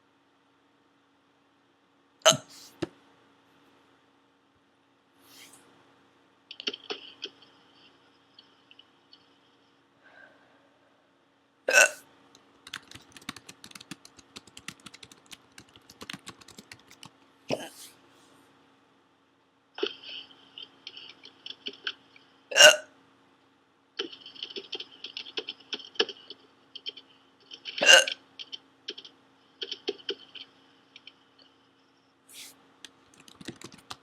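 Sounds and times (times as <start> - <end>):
woman hiccuping: 27.8 - 28.2.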